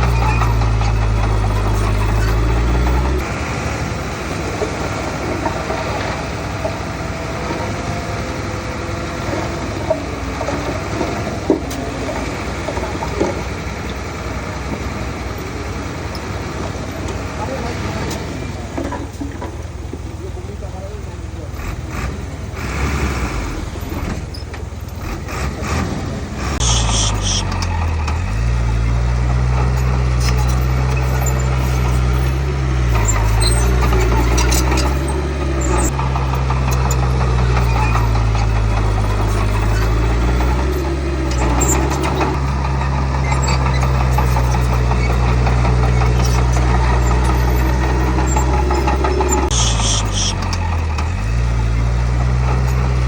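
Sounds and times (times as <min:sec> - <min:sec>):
high-pitched metallic squeaks: 0:00.0 - 0:03.3, 0:22.7 - 0:25.9, 0:26.5 - 0:53.0
heavy diesel engine under load: 0:00.0 - 0:53.0.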